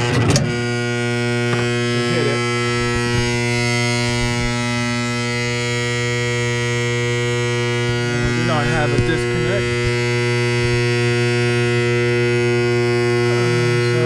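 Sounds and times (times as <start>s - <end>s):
motor humming: 0.0s - 14.0s.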